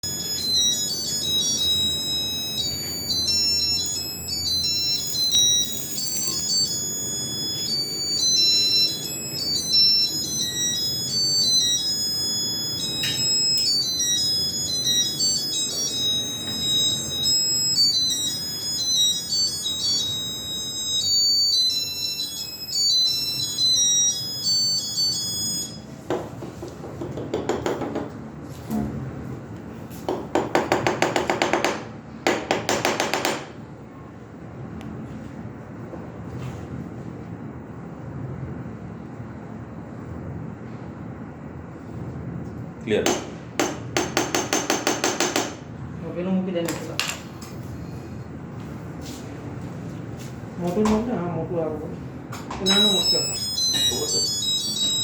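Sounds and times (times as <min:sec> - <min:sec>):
chime-like melody: 0:00.0 - 0:26.0, 0:52.6 - 0:55.0.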